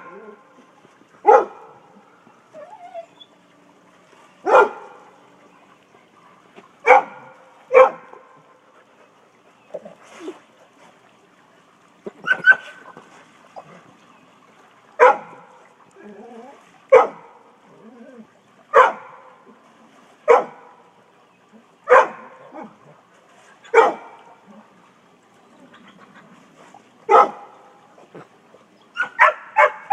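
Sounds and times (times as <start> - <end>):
dog barking: 1.2 - 1.7, 4.5 - 4.8, 6.8 - 8.0, 15.0 - 15.4, 16.9 - 17.2, 18.8 - 19.1, 20.3 - 20.6, 21.9 - 22.7, 23.7 - 24.1, 27.1 - 27.5, 29.0 - 29.9.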